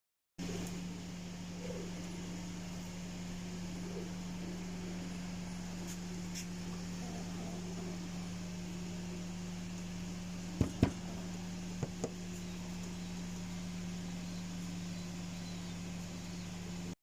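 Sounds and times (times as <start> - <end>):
low mechanical hum: 0.4 - 17.0
sharp knocks: 10.6 - 11.0.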